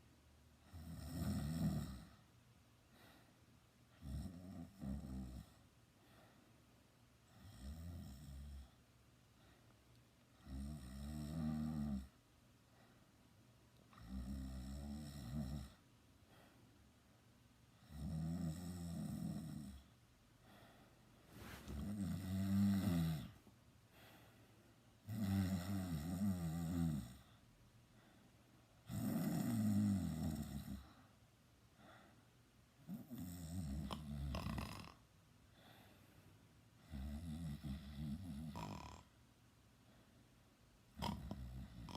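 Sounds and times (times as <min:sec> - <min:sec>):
quiet breaths: 0:00.0 - 0:41.9
person snoring: 0:00.7 - 0:02.2, 0:04.0 - 0:05.6, 0:10.4 - 0:12.1, 0:13.9 - 0:15.8, 0:21.4 - 0:23.4, 0:25.0 - 0:27.3, 0:28.9 - 0:30.9, 0:32.9 - 0:35.0, 0:36.8 - 0:39.1, 0:41.0 - 0:41.9.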